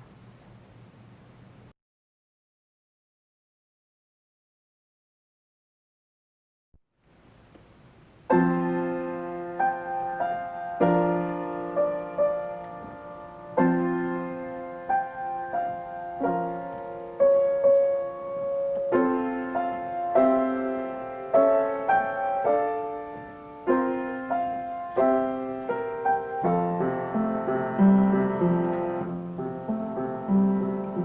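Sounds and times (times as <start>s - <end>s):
slow solo piano piece: 8.3s - 31.0s.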